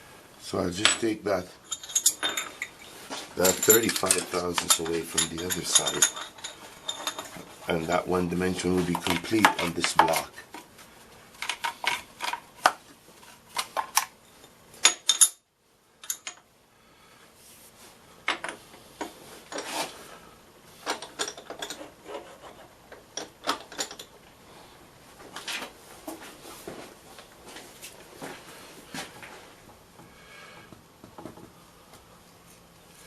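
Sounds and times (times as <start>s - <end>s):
metal tools clinking and scraping: 0.7s - 10.7s, 11.4s - 15.4s, 16.0s - 16.4s, 18.3s - 20.0s, 20.7s - 24.2s.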